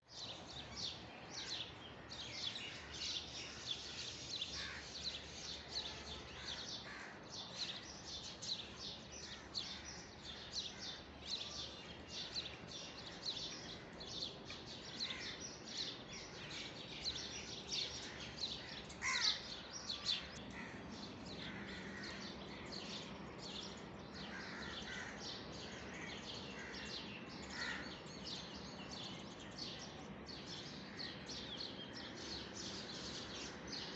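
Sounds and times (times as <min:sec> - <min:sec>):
small birds chirping and trilling: 0:00.0 - 0:33.9.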